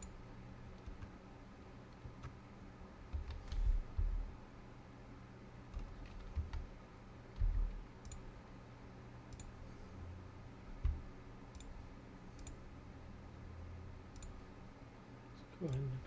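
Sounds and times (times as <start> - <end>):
computer mouse clicks: 3.1 - 4.2, 7.4 - 8.2, 9.3 - 9.6, 10.8 - 11.8, 12.4 - 12.6, 14.1 - 14.4
dull low thumps: 7.4 - 7.8, 10.8 - 11.0.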